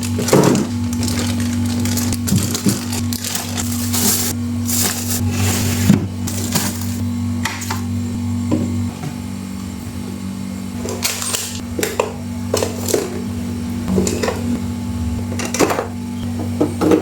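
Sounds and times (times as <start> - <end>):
items being handled and set down: 0.0 - 7.9, 10.8 - 13.3, 13.9 - 14.6, 15.3 - 17.0
steady low hum: 0.0 - 17.0.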